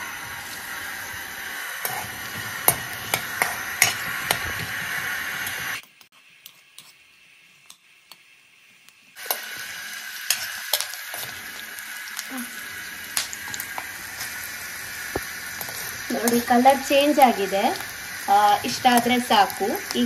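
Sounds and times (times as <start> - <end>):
onions sizzling in a pan: 0.0 - 20.0
spatula scraping a pan: 1.8 - 5.6, 15.5 - 16.6.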